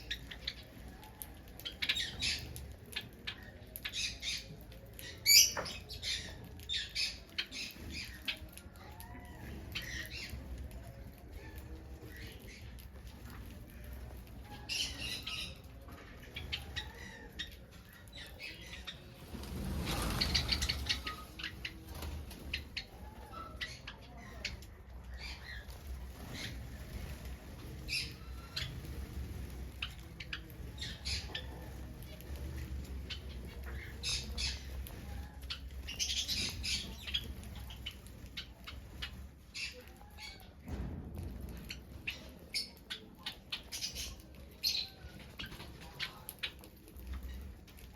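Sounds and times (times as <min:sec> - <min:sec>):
finches chirping: 0:19.9 - 0:24.6.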